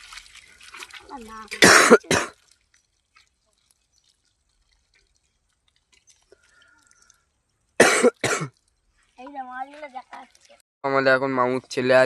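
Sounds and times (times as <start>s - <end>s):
person coughing: 1.6s - 2.4s, 7.8s - 8.5s.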